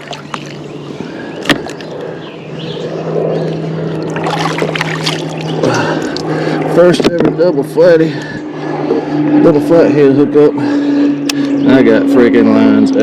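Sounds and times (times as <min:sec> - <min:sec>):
water splashing: 0:00.0 - 0:00.8, 0:03.4 - 0:06.5
steady low hum: 0:00.0 - 0:13.0.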